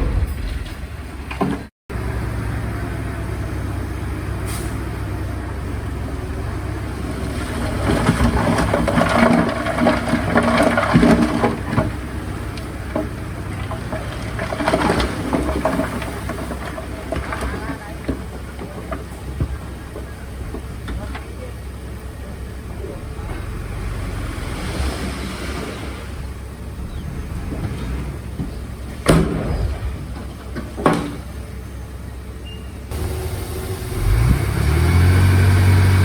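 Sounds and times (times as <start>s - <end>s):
metallic rattling and clanking: 0.0s - 1.7s
diesel machinery engine drone: 0.0s - 36.0s.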